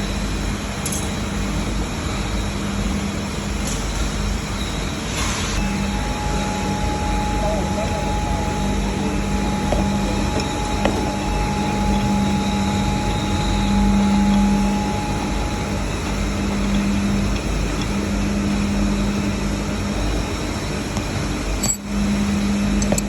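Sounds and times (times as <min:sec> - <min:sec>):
high machine whine: 0:00.0 - 0:23.0
industrial machinery humming: 0:00.0 - 0:23.0.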